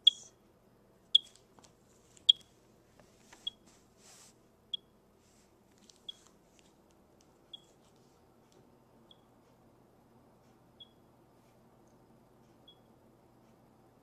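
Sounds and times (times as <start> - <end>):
smoke detector chirps: 0.0 - 0.3.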